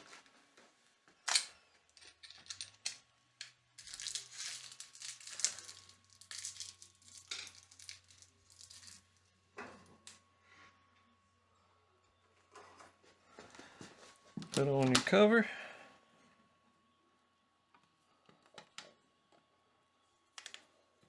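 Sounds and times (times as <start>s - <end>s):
hands scraping and rustling: 3.8s - 9.0s.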